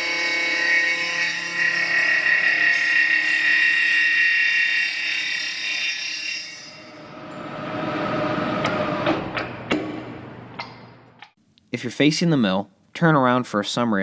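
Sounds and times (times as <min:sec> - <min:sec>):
rough metal cutting: 0:00.0 - 0:09.6
milling cutter whine: 0:00.0 - 0:09.8.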